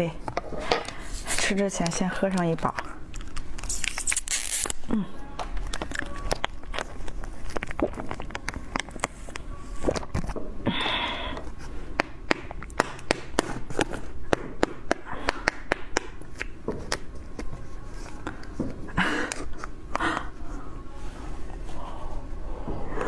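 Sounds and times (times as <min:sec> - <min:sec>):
wet mouth clicks and smacks: 0:07.5 - 0:09.0.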